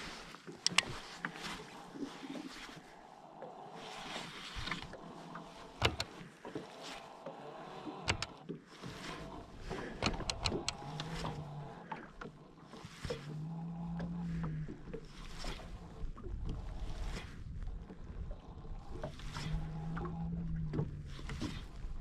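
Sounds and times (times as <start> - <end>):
clicks and knocks of handling: 0.6 - 1.0, 5.8 - 6.2, 8.1 - 8.4, 9.9 - 11.4.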